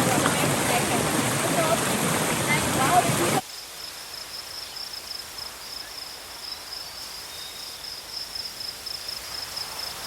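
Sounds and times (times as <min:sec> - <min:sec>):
faint outdoor background noise: 0:00.0 - 0:10.0
crickets chirring: 0:03.4 - 0:10.0.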